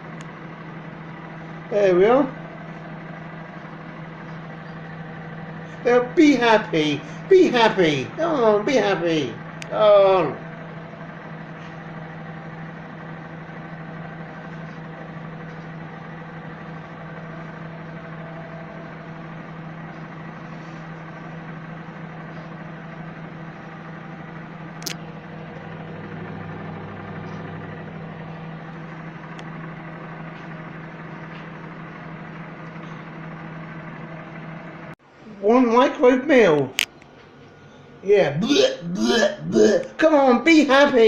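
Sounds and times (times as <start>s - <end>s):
microwave oven humming: 0.0s - 41.0s
sharp click: 24.8s - 25.0s, 36.6s - 37.1s.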